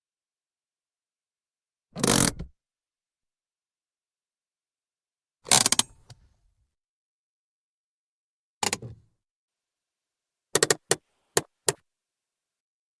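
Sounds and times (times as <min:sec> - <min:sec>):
handbrake lever ratcheting: 0:05.5 - 0:05.9, 0:10.6 - 0:11.6
handbrake ratchet clicks: 0:05.5 - 0:06.0, 0:10.6 - 0:11.6.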